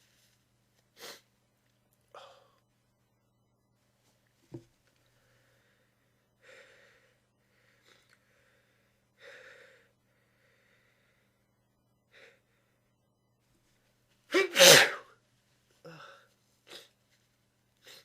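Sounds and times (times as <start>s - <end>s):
person sniffing: 0.9s - 1.3s.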